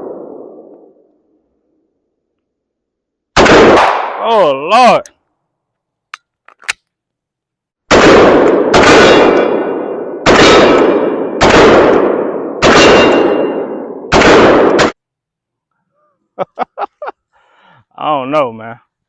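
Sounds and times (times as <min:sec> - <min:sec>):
pistol shots with ringing tail: 0:03.4 - 0:04.2, 0:07.9 - 0:14.9.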